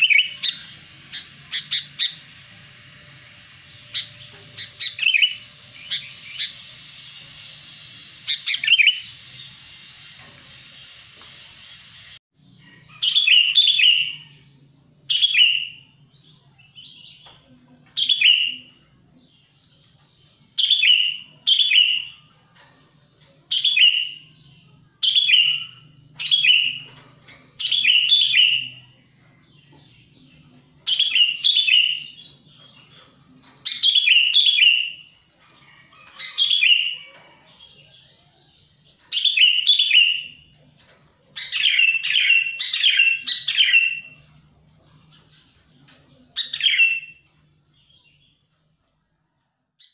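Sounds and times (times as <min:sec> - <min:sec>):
steady hiss: 0:00.4 - 0:12.2.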